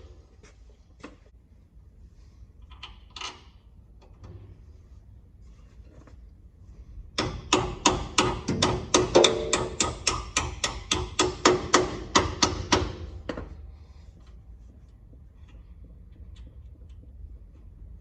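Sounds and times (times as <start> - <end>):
hammering on metal: 7.2 - 13.5.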